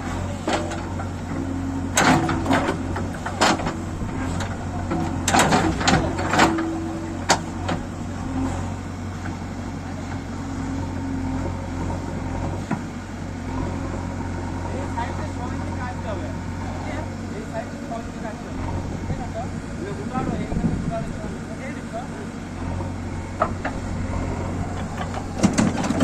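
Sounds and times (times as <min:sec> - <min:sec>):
metallic clanks of digger: 0:00.0 - 0:10.6, 0:11.8 - 0:13.1, 0:22.6 - 0:26.0
diesel engine running: 0:00.0 - 0:26.0.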